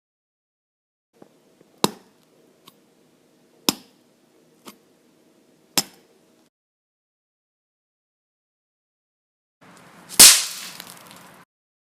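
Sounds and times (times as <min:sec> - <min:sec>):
faint steady hum: 0:01.2 - 0:06.5.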